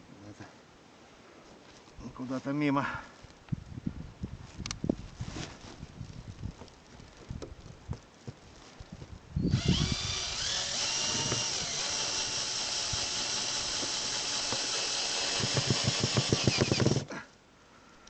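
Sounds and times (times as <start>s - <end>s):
power drill driving screw: 9.5s - 17.1s.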